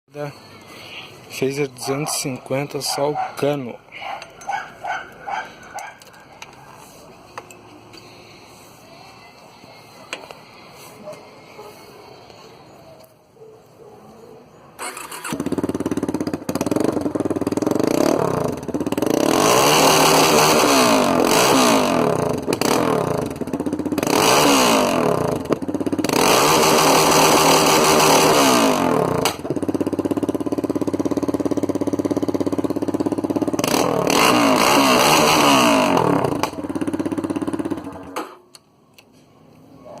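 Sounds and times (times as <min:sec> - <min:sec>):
motorcycle engine revving and idling: 0:14.8 - 0:38.4.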